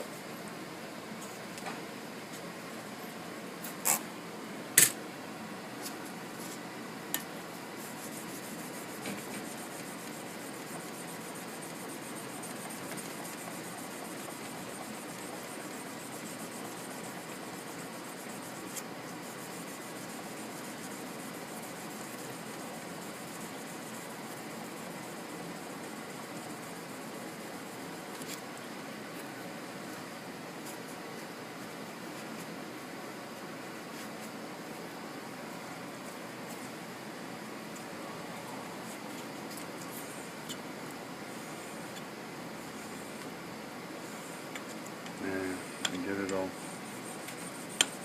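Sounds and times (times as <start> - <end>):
sandpaper rasping on blade: 7.8 - 11.0.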